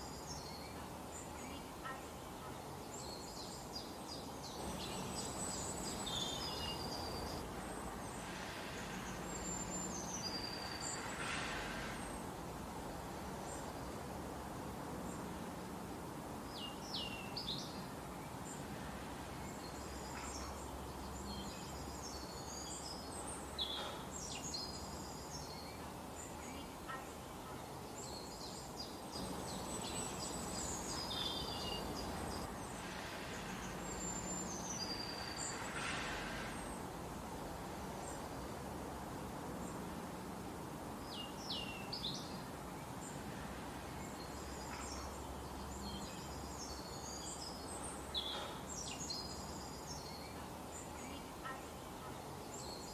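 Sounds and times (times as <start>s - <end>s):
small birds chirping and singing: 0.0s - 11.1s, 19.4s - 35.7s, 41.0s - 43.2s, 44.0s - 52.9s
forest ambience rush: 0.0s - 52.9s.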